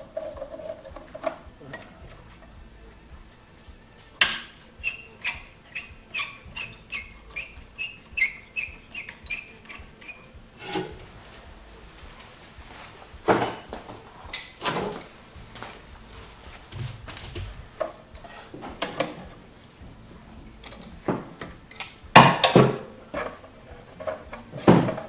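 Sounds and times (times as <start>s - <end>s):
short squeaky strokes: 4.3s - 11.5s.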